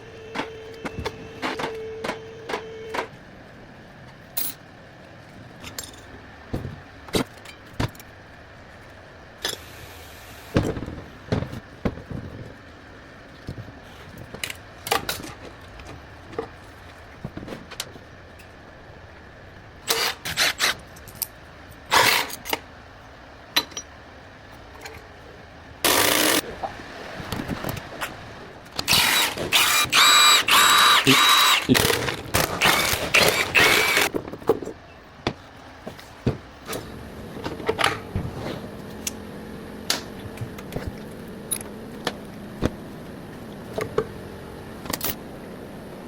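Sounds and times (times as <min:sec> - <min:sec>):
faint steady hum: 0:00.0 - 0:46.0.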